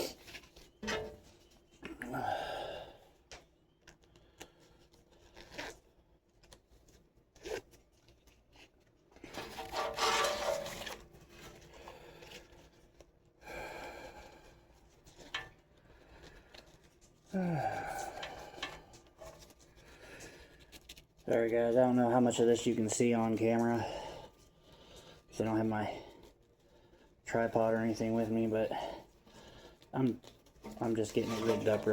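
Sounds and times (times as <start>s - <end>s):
fabric and webbing rustling: 14.6s - 31.9s.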